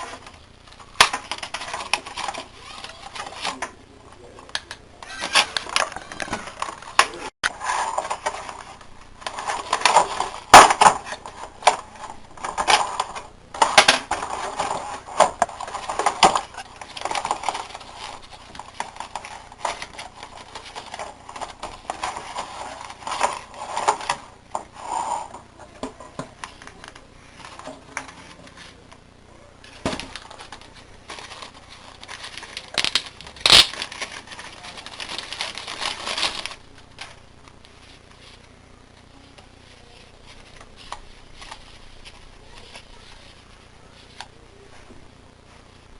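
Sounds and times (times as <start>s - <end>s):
packaging rustling and crinkling: 4.6s - 24.7s, 29.6s - 38.5s.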